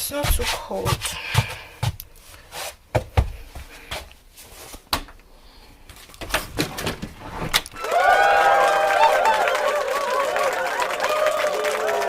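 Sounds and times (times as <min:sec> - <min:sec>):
footsteps: 0:00.0 - 0:04.8.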